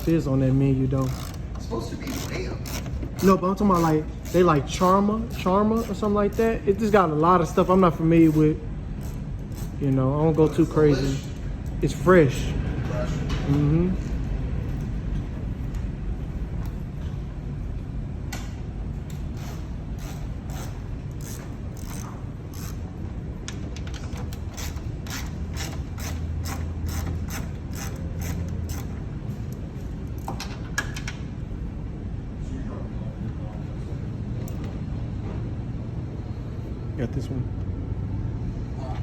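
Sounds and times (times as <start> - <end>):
regular mechanical clicking: 0.9 - 6.9.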